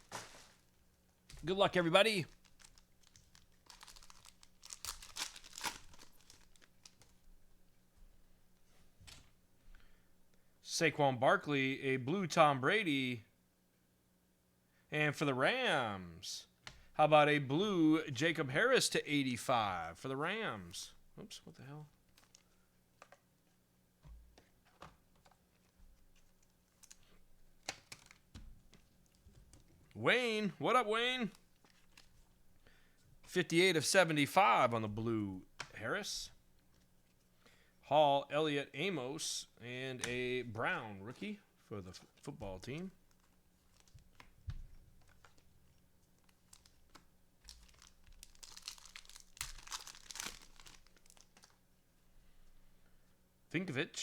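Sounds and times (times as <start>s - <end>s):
wrappers crinkling and tearing: 0.0s - 0.8s, 2.2s - 7.3s, 22.0s - 22.6s, 26.1s - 28.2s, 43.0s - 44.3s, 45.0s - 51.6s
faint steady low hum: 0.0s - 54.0s.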